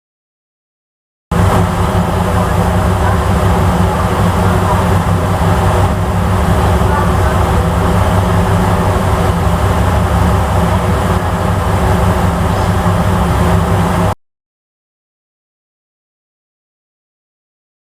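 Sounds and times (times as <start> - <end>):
constant rushing noise: 1.3 - 14.2
ship engines droning: 1.3 - 14.2.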